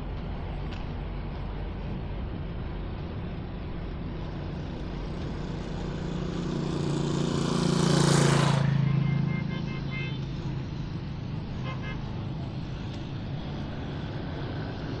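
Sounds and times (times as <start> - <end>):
street noise: 0.0 - 15.0
vehicle engine passing: 4.3 - 15.0.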